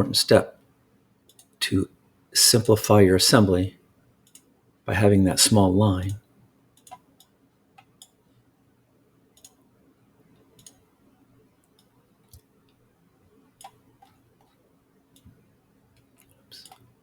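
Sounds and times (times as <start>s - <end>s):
computer mouse clicks: 1.3s - 1.6s, 4.2s - 4.5s, 6.8s - 8.2s, 9.4s - 9.6s, 10.4s - 10.9s, 13.6s - 15.4s, 16.0s - 16.9s.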